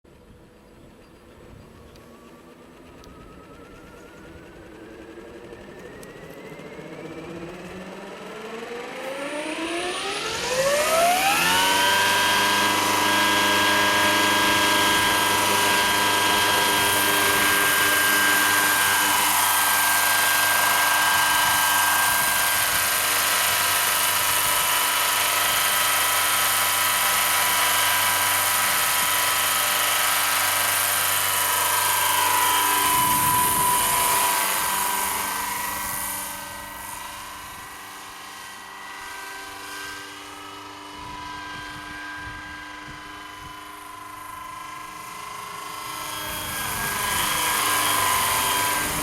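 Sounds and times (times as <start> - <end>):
helicopter rotor rush: 0.1 - 49.0
electric drive whine: 0.2 - 49.0.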